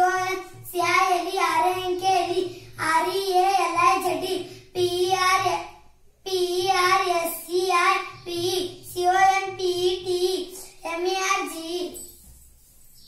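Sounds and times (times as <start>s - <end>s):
child chanting in sing-song: 0.0s - 12.1s.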